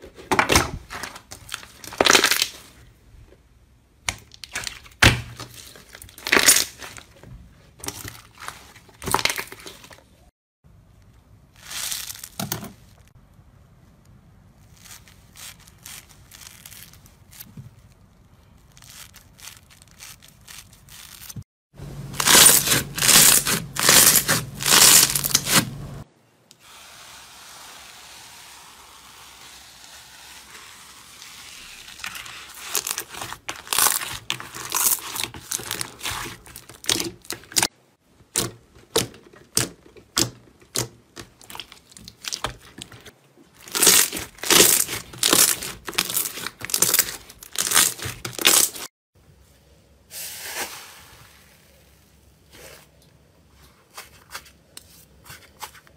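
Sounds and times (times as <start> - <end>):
slime crackling and popping: 1.3 - 2.6, 22.1 - 25.6, 32.5 - 37.7, 40.2 - 48.9.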